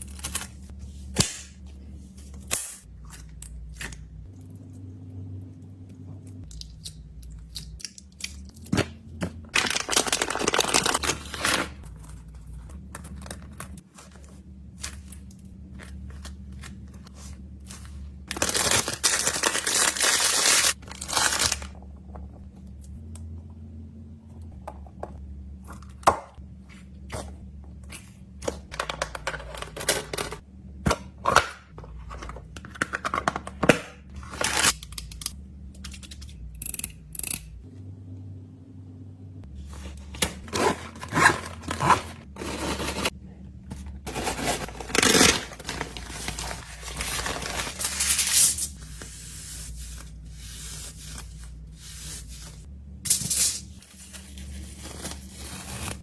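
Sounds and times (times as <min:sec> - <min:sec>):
plastic packaging crinkling: 0:09.5 - 0:12.9, 0:17.4 - 0:21.8, 0:44.1 - 0:48.8.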